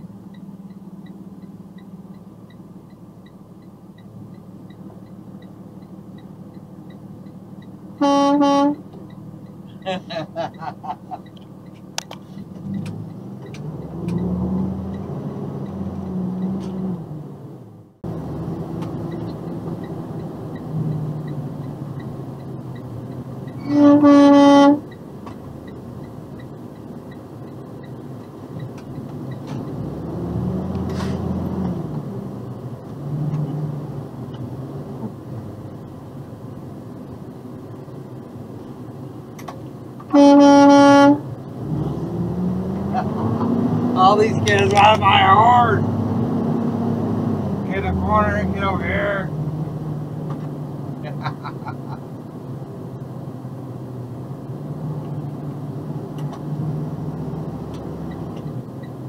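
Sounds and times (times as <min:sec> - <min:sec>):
truck engine and tyres running: 0:00.0 - 0:59.0
truck air horn blast: 0:08.0 - 0:08.8, 0:23.6 - 0:24.8, 0:40.1 - 0:41.2.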